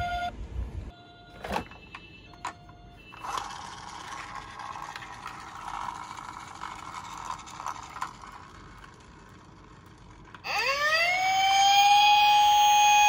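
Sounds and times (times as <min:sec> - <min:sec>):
toy car wheels rattling: 0:03.1 - 0:10.9.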